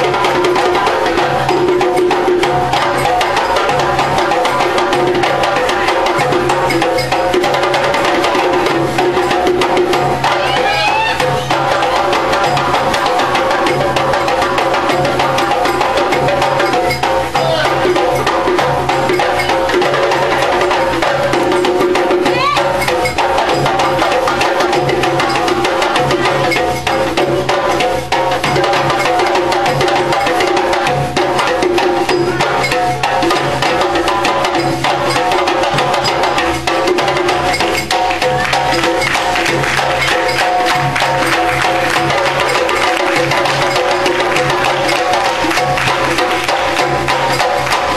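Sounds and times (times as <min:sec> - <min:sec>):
fast hand percussion and drums: 0:00.0 - 0:47.9.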